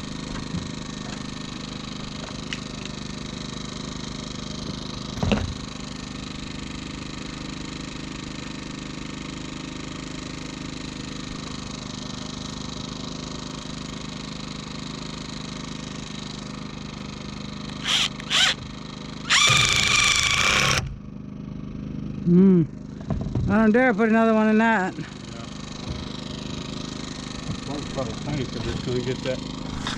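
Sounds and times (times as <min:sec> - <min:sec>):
power drill driving fastener: 0:17.7 - 0:18.6, 0:19.3 - 0:21.0.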